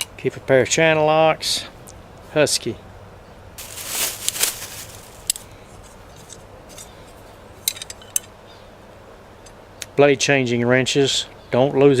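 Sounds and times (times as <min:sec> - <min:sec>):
rustle: 0:03.6 - 0:08.2.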